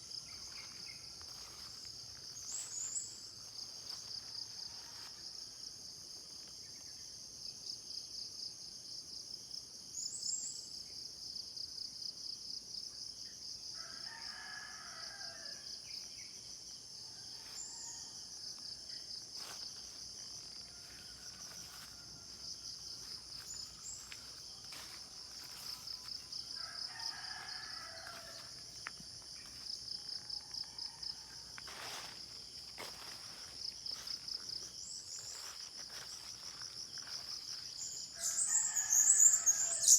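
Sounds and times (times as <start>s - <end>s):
insects trilling: 0.0s - 7.8s, 13.8s - 39.9s
rooster crowing: 4.1s - 5.4s, 13.8s - 15.7s, 17.1s - 18.5s, 20.3s - 28.8s, 29.9s - 32.2s, 37.1s - 39.9s.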